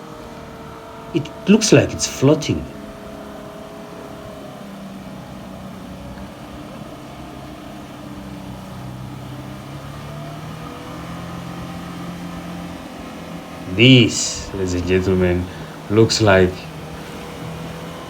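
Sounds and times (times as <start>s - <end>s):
suv engine running: 0.0s - 18.0s.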